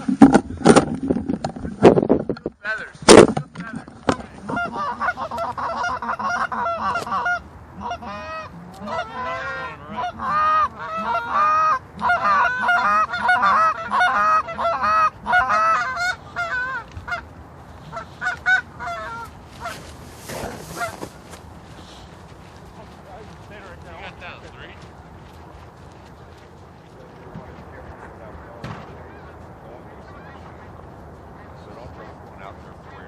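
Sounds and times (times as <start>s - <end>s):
geese honking: 4.1s - 24.8s.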